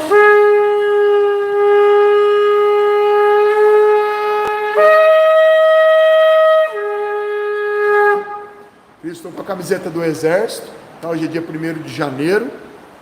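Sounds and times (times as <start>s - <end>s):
shofar blowing: 0.0s - 8.8s.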